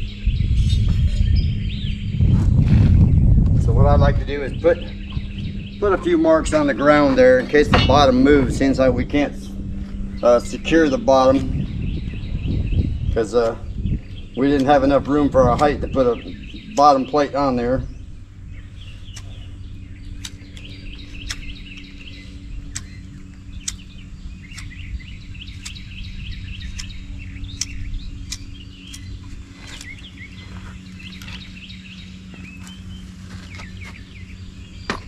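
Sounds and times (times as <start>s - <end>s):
low hum: 0.0s - 35.0s
small birds chirping: 0.0s - 35.0s
sharp clicks: 20.1s - 21.9s, 22.7s - 24.8s, 25.5s - 25.8s, 26.6s - 29.2s.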